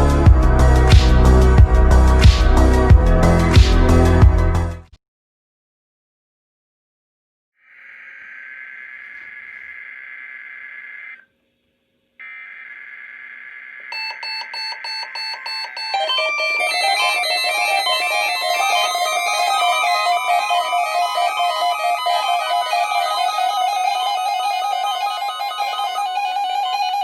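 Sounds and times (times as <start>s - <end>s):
rapid beeping: 13.9s - 27.0s
steady high electronic tone: 14.0s - 27.0s
electric guitar music: 15.0s - 27.0s.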